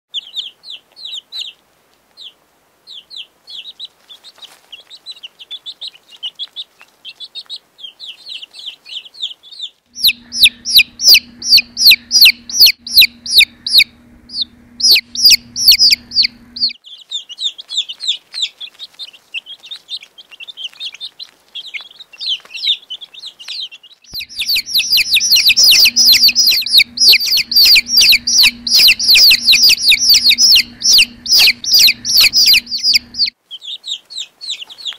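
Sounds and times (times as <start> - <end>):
baby chicks peeping: 0.1 - 34.9
low hum: 9.9 - 16.8, 24.2 - 33.3.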